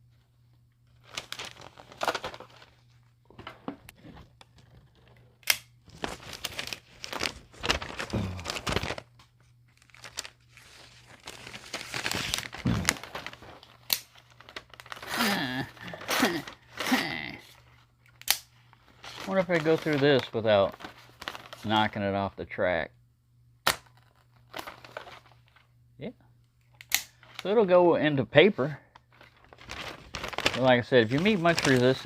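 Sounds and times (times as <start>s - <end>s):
paper rustling and crinkling: 0.8s - 17.9s, 18.6s - 21.9s, 24.0s - 25.7s, 29.0s - 32.0s.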